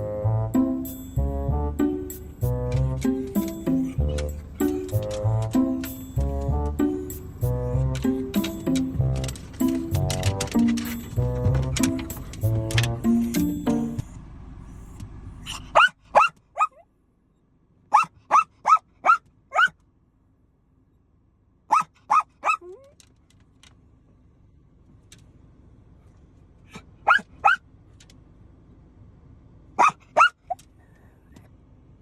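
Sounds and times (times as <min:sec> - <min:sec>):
dog whining and yelping: 0:18.0 - 0:19.8, 0:21.7 - 0:23.0, 0:26.7 - 0:27.6, 0:29.8 - 0:31.2.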